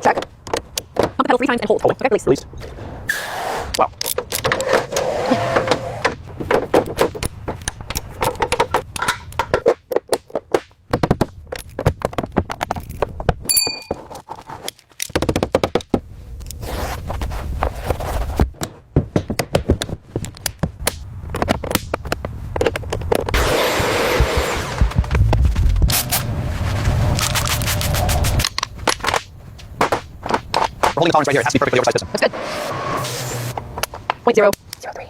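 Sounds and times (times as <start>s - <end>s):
short bright ring: 13.5s - 14.0s.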